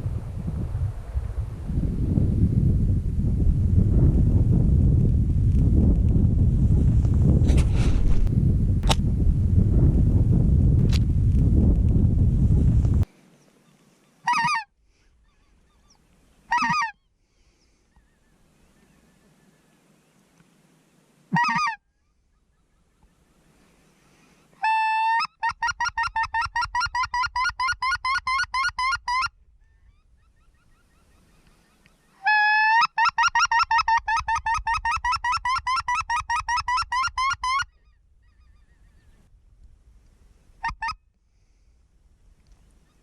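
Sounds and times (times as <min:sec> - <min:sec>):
goose honking: 0:14.2 - 0:14.7, 0:16.5 - 0:17.0, 0:21.3 - 0:21.8, 0:24.6 - 0:29.3, 0:32.2 - 0:38.8.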